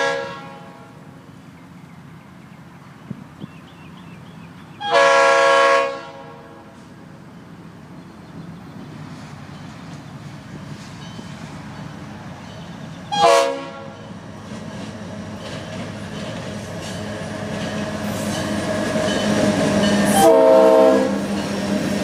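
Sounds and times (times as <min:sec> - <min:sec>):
locomotive horn blasts: 0:00.0 - 0:01.1, 0:04.8 - 0:06.8, 0:13.1 - 0:14.0, 0:20.1 - 0:21.2
train engine and wheels: 0:00.0 - 0:22.0.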